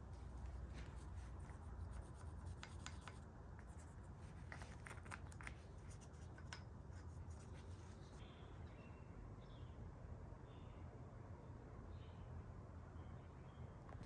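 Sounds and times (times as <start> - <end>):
low steady hum: 0.0 - 14.0
faint scratching: 0.1 - 8.3.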